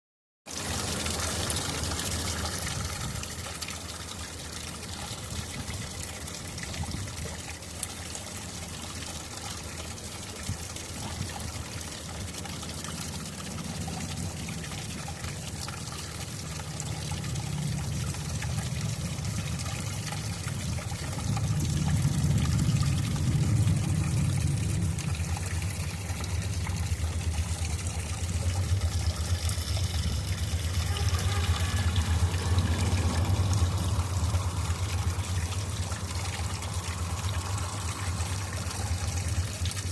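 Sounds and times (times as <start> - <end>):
small waterfall pouring and trickling: 0.4 - 39.9.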